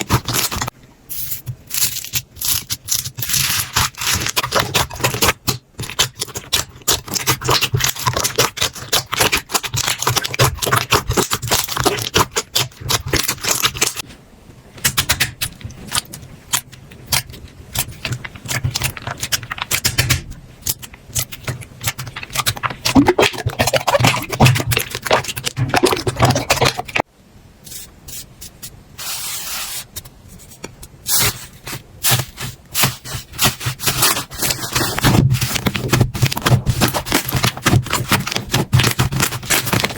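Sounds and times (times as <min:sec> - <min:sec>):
slime crackling and popping: 0:00.0 - 0:14.0, 0:14.9 - 0:27.0
slime squelching: 0:00.0 - 0:14.0, 0:14.9 - 0:27.1, 0:31.0 - 0:39.9.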